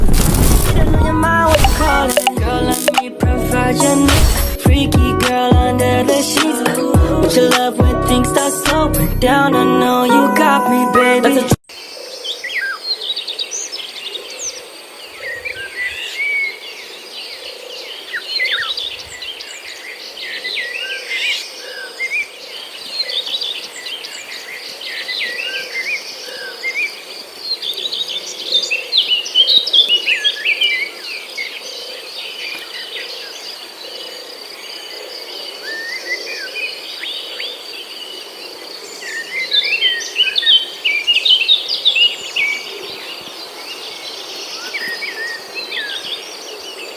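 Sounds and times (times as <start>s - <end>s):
birds chirping and twittering: 11.7s - 46.9s.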